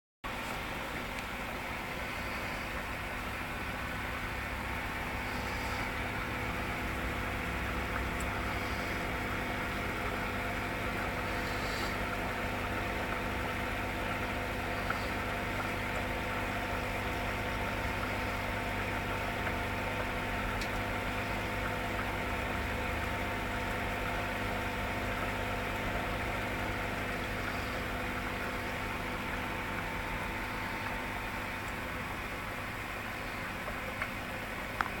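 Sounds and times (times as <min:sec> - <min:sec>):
aquarium pump humming: 0:00.3 - 0:35.0
hiss of moving water: 0:05.1 - 0:06.1, 0:11.2 - 0:12.2.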